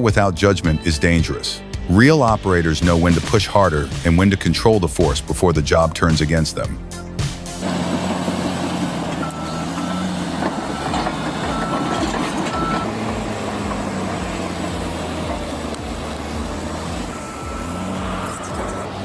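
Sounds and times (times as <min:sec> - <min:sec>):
heavy machine engine running: 0:07.6 - 0:19.0
warning beeper beeping: 0:09.2 - 0:13.0, 0:16.4 - 0:19.0.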